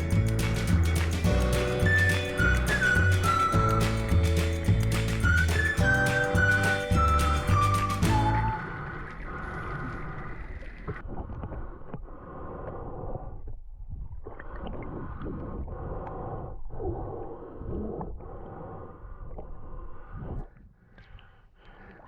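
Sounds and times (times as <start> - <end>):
water sloshing and gurgling: 8.7 - 20.6.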